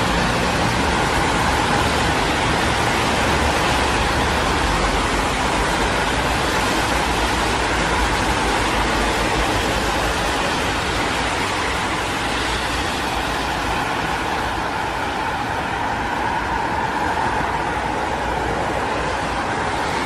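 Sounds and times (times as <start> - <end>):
passing road traffic: 0.0 - 20.0.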